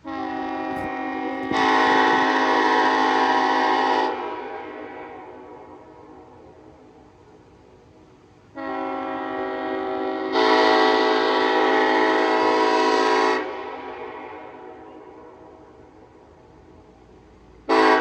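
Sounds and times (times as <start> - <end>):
train horn blast: 0.0 - 6.6, 8.5 - 16.1, 17.6 - 18.0.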